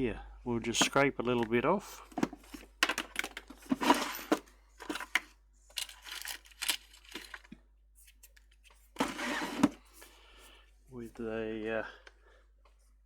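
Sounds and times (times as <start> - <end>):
scratchy scraping and handling: 0.8 - 10.1.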